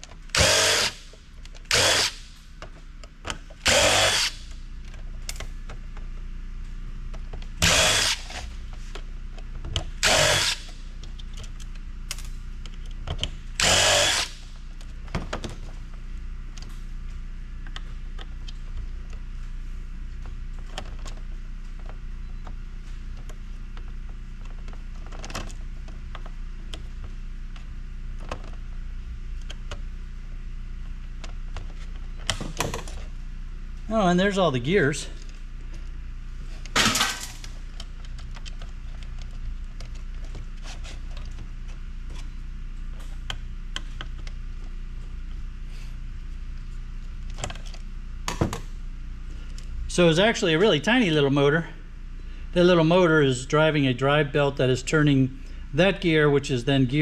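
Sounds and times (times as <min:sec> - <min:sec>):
low steady hum: 0:00.0 - 0:57.0
power drill driving screws: 0:00.3 - 0:01.0, 0:01.7 - 0:02.2, 0:03.6 - 0:04.4, 0:07.6 - 0:08.5, 0:10.0 - 0:10.7, 0:13.6 - 0:14.4.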